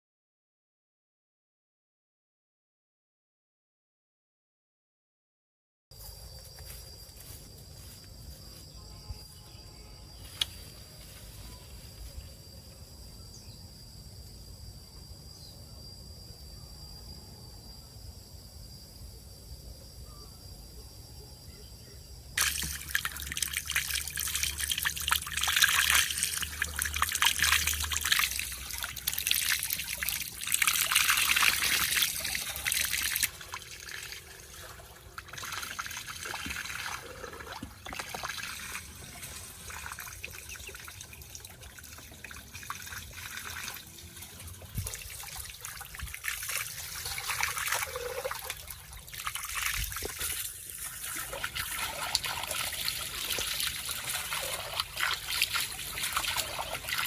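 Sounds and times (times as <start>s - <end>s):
running splashing water: 22.4s - 57.0s.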